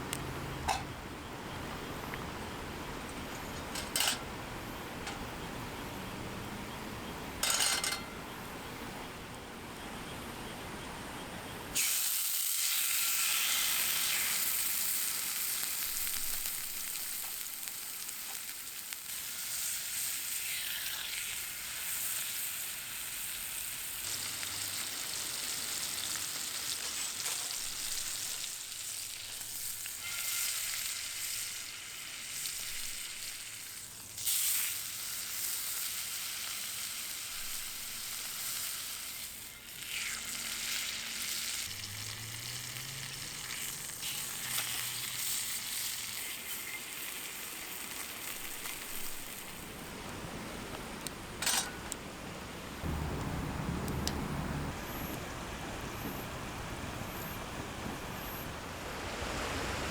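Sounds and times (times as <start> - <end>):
food sizzling in a frying pan: 11.7 - 50.1.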